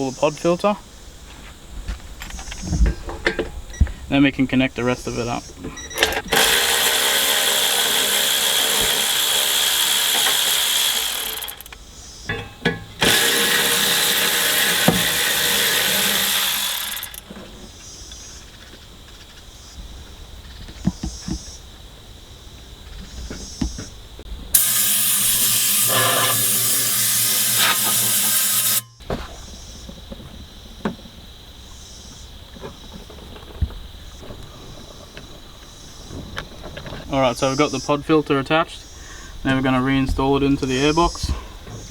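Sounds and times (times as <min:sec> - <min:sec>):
hissing workshop tool: 0:06.3 - 0:11.7, 0:13.0 - 0:17.2, 0:24.6 - 0:29.0
handling clicks and knocks: 0:11.4 - 0:13.2.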